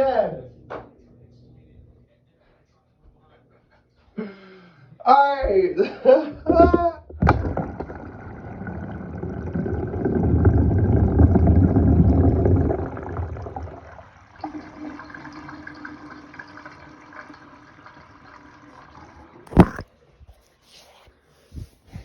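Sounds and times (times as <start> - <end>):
water rushing in a sink: 6.6 - 19.8.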